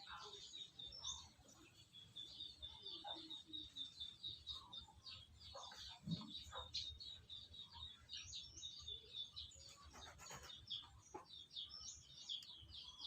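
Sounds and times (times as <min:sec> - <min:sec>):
small birds chirping: 0:00.0 - 0:13.0.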